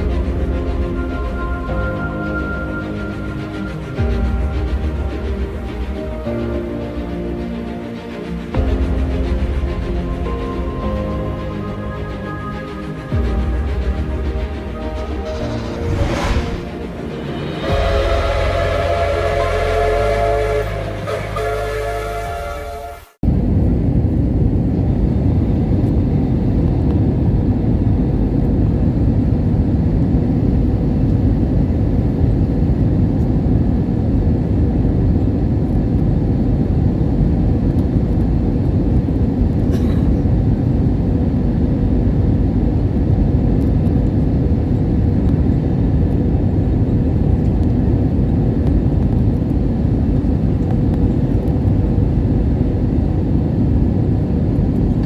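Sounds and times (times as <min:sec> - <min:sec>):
engine rumble and rushing air: 0:00.0 - 0:19.9, 0:23.2 - 0:55.0.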